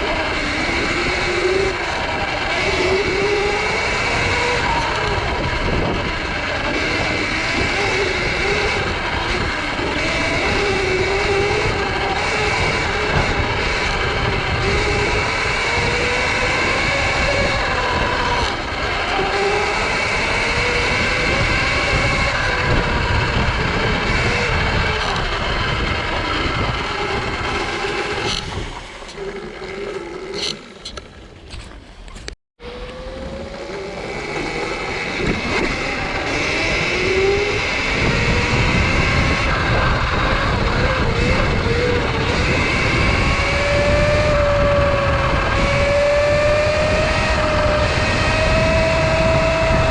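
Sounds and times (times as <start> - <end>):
electric motor whine: 0.0 - 49.9
wind and tyre noise: 0.0 - 49.9.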